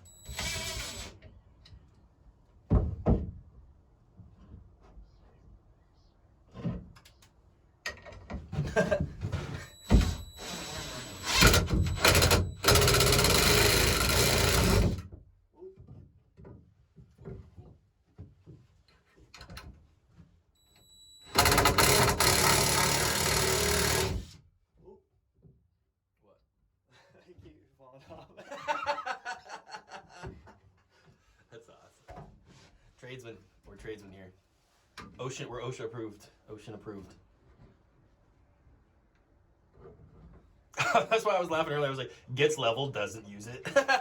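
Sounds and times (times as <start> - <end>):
power drill driving screws: 0.0 - 1.2, 9.7 - 15.0, 21.2 - 24.4.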